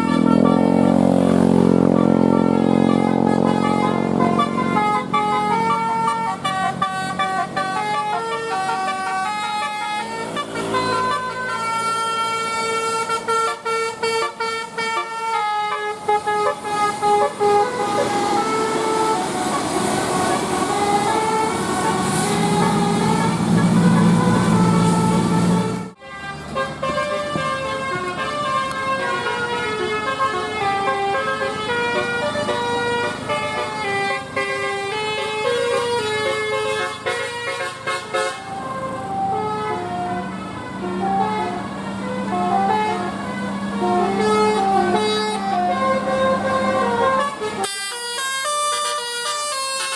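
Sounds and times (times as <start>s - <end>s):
bus musical horn tune: 0.0s - 49.9s
wash of noise: 16.3s - 25.9s.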